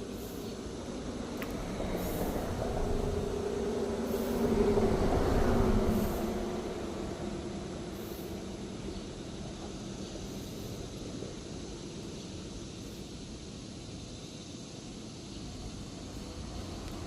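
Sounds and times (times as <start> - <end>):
vehicle passing by: 1.4 - 8.4.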